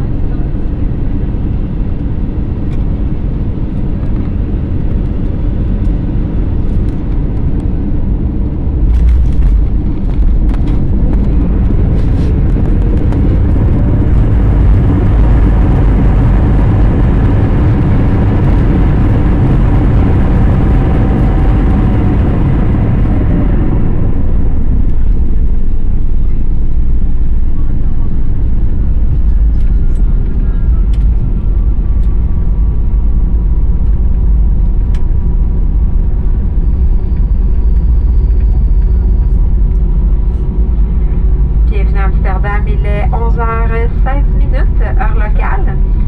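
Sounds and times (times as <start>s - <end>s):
aircraft engine and airflow rumble: 0.0s - 46.0s
runway rollout rumble: 0.0s - 46.0s.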